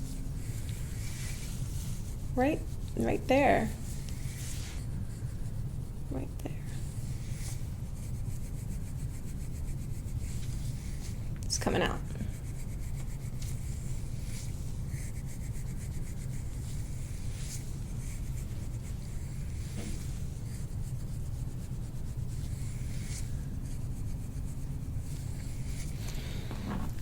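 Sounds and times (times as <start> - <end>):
hands rubbing skin and cloth: 0.0 - 6.0
steady low rumble: 0.0 - 27.0.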